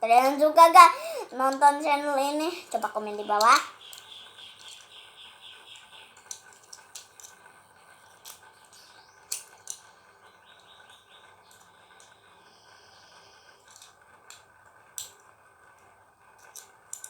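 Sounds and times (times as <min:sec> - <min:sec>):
faint chirps: 0:02.3 - 0:06.4, 0:08.6 - 0:13.8.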